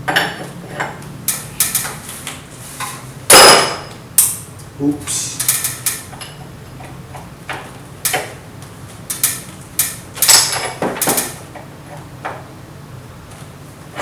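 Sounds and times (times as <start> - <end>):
steady low hum: 0.0 - 14.0
metal spanner clanking on nuts: 0.1 - 2.0, 5.4 - 6.4, 8.1 - 8.3, 9.1 - 11.4.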